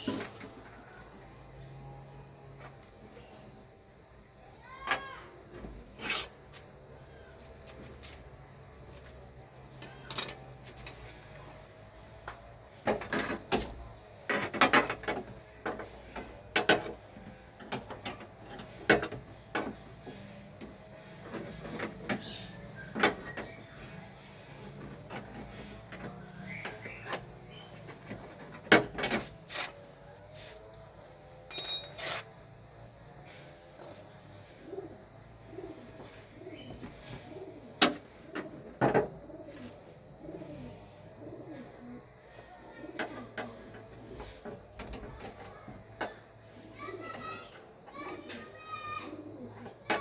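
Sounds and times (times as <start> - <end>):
tools and parts clattering: 9.7 - 11.2, 12.8 - 23.6, 31.4 - 32.4, 33.7 - 34.4.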